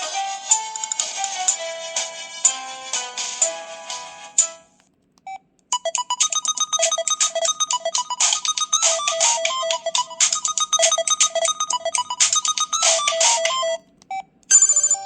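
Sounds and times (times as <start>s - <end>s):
ringtone of held notes: 5.7s - 13.8s, 14.5s - 15.0s
electronic ringtone with clicking beat: 5.7s - 13.9s, 14.5s - 15.0s.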